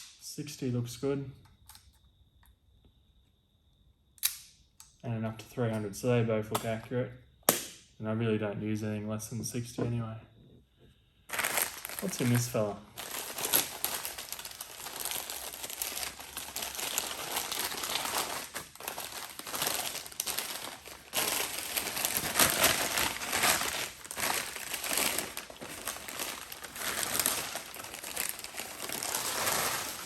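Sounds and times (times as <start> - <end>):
newspaper crumpling: 11.3 - 30.0.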